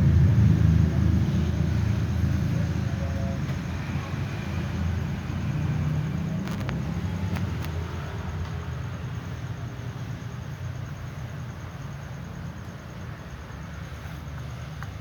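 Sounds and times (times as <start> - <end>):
low background rumble: 0.0 - 4.3.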